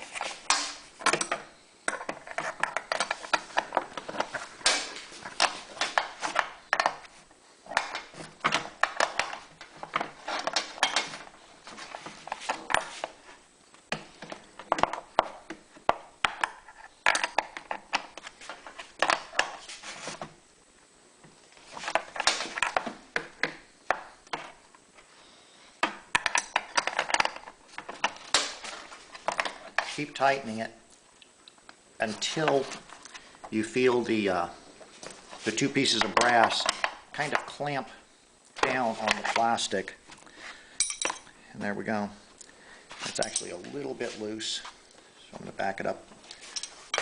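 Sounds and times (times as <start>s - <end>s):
brass fittings clinking: 40.8s - 41.3s, 43.1s - 43.8s, 46.3s - 47.0s.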